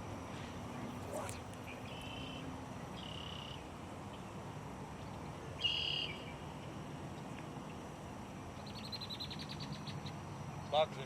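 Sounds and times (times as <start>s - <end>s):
low outdoor background: 0.0s - 11.0s
buzzy high animal call: 0.9s - 1.5s.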